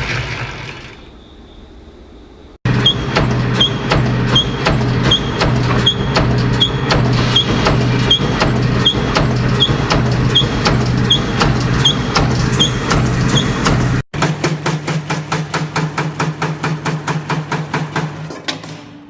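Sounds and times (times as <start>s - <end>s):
machine hum: 0.0s - 15.8s
production machine cycling with clicks: 2.7s - 14.0s
machine clattering fast: 2.7s - 18.8s.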